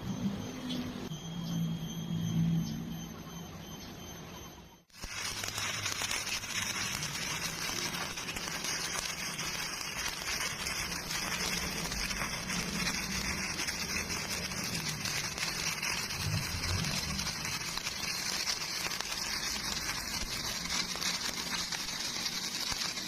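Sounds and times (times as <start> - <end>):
welding arc crackling and hissing: 4.9 - 23.0.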